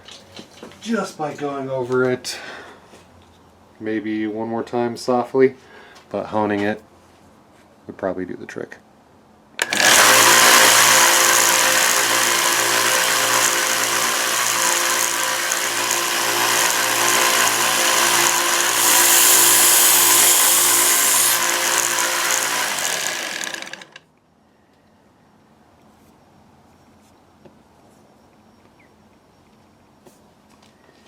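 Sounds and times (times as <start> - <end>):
belt sander motor hum: 9.6 - 24.0.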